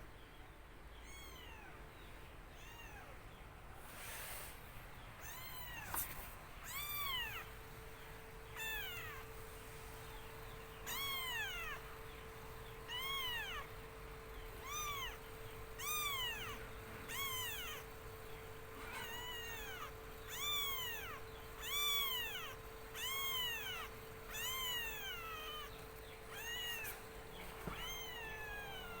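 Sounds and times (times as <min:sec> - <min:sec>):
kitten meowing: 0:01.0 - 0:01.8, 0:02.5 - 0:03.2, 0:05.2 - 0:06.0, 0:06.6 - 0:07.5, 0:08.5 - 0:09.3, 0:10.8 - 0:11.9, 0:12.9 - 0:13.7, 0:14.6 - 0:15.2, 0:15.8 - 0:17.9, 0:18.9 - 0:25.7, 0:26.3 - 0:27.0, 0:27.7 - 0:29.0.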